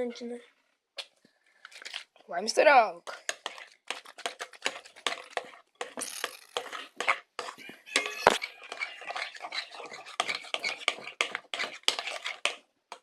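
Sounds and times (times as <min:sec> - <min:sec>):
utensil stirring slime in bowl: 0:03.0 - 0:13.0.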